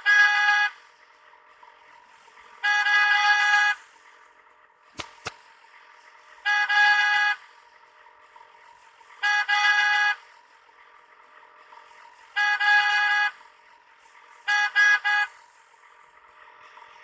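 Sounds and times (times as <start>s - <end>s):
high-pitched vehicle horn honking: 0.0s - 0.8s, 2.6s - 3.8s, 6.4s - 7.4s, 9.2s - 10.2s, 12.3s - 13.4s, 14.4s - 15.4s.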